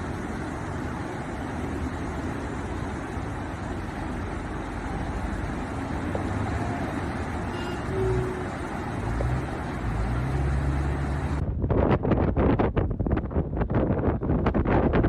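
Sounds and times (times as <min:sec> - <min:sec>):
motor vehicles running: 0:00.0 - 0:11.4
low engine hum: 0:00.0 - 0:15.0
steady rushing noise: 0:00.0 - 0:15.0
wind buffeting microphone: 0:00.0 - 0:15.0.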